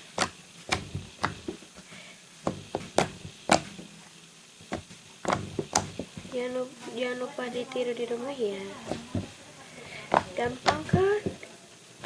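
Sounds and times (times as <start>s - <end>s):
sharp slime pops and clicks: 0.2s - 1.5s, 2.5s - 3.7s, 4.7s - 6.0s.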